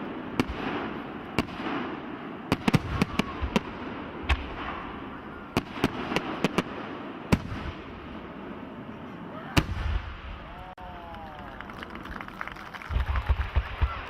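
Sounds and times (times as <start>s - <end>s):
fireworks bangs: 0.0s - 8.8s, 9.4s - 10.8s, 11.6s - 14.0s
fireworks crackle: 11.2s - 14.0s.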